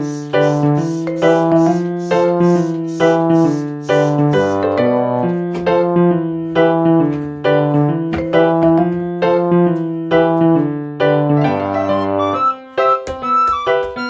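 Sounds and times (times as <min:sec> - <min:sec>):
light piano music: 0:00.0 - 0:14.0.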